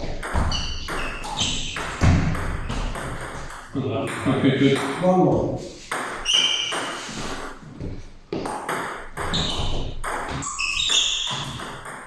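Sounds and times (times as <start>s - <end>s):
table tennis ball hits: 0.2s - 5.0s, 8.4s - 12.0s.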